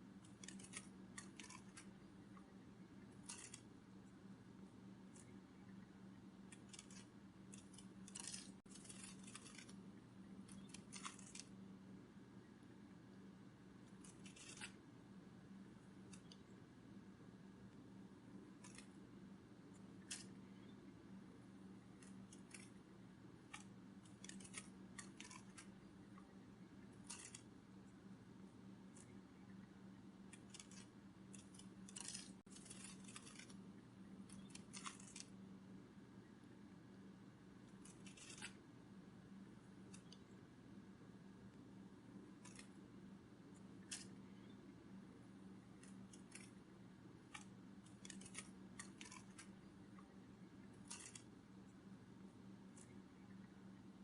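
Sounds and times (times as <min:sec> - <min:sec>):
low steady hum: 0:00.0 - 0:54.0
butterfly wings rustling: 0:06.5 - 0:09.8, 0:30.3 - 0:33.6, 0:50.7 - 0:51.3.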